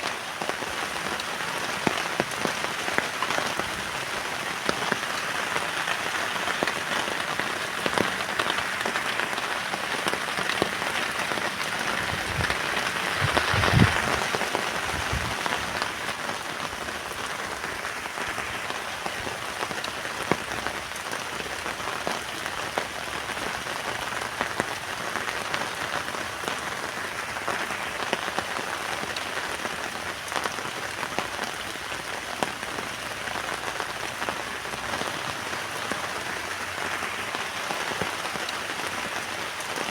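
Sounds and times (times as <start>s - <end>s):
heavy rain on a tent: 0.0s - 39.9s
wind gust rumbling: 11.6s - 15.8s.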